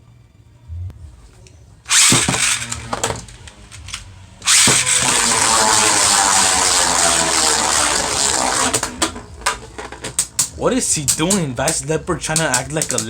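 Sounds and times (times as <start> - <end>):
spinning tops rattling: 1.9 - 13.0
spinning tops whirring and scraping: 1.9 - 13.0
tops striking with clicks: 8.7 - 13.0.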